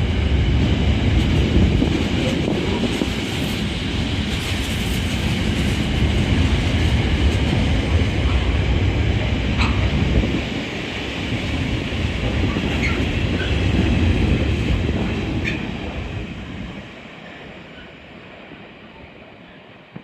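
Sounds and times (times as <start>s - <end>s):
freight train rumbling past: 0.0s - 20.0s
train clanks: 0.0s - 20.0s.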